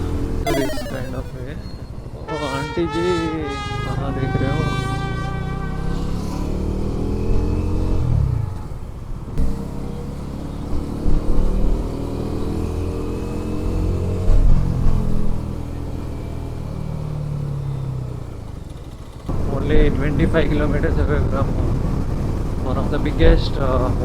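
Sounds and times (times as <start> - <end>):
motorcycle engine revving: 3.8 - 20.8.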